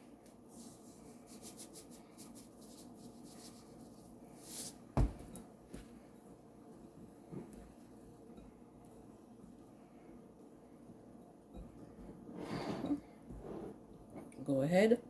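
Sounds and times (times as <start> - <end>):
dull thump: 5.0 - 5.2.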